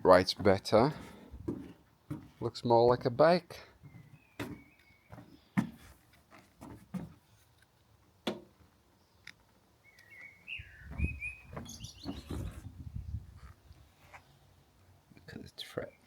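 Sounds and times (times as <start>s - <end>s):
bird chirping: 3.8s - 5.6s, 9.0s - 13.2s.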